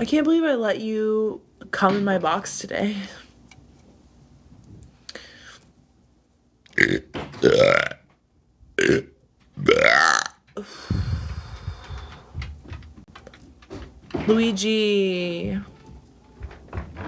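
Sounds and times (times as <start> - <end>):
woman belching: 6.8 - 8.0, 8.8 - 9.1, 9.7 - 10.4.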